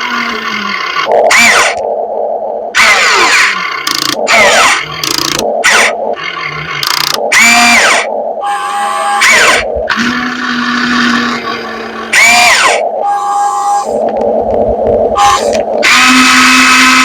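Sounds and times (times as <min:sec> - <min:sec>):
electric motors whining: 0:00.0 - 0:01.8, 0:02.8 - 0:14.6, 0:15.2 - 0:17.0
motor bursts sliding in pitch: 0:02.8 - 0:14.0, 0:15.2 - 0:17.0.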